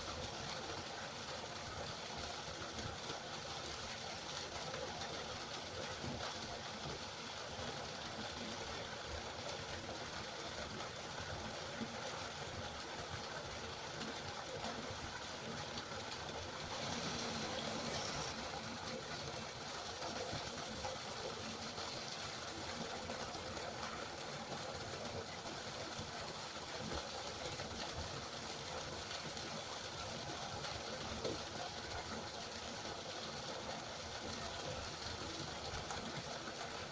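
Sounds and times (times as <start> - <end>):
river water rushing: 16.6 - 19.0.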